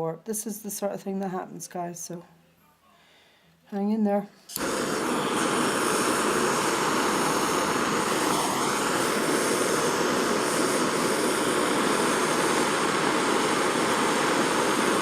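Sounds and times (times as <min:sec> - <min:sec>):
gas torch hissing: 0:04.5 - 0:15.0.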